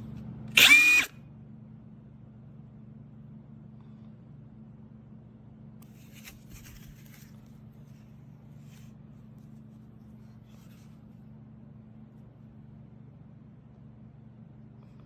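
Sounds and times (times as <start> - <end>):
steady low hum: 0.0 - 15.0
scraping and rustling handling noises: 5.8 - 11.4.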